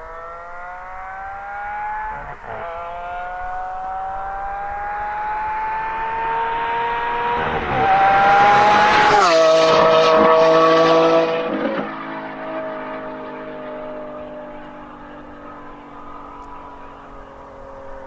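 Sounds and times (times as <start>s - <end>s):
car engine accelerating: 0.0s - 18.0s.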